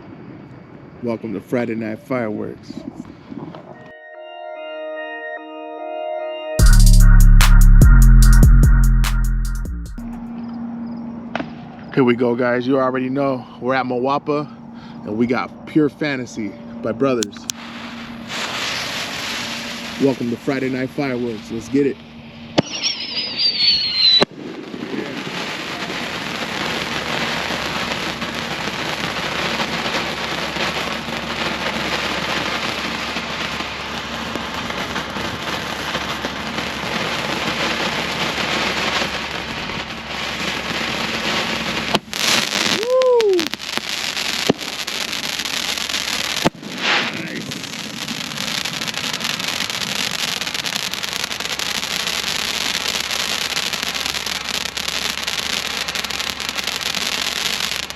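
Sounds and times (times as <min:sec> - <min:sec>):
firework falling whistle: 0:03.4 - 0:04.7, 0:06.6 - 0:12.0, 0:16.1 - 0:57.9
dense firework crackle: 0:17.0 - 0:57.9.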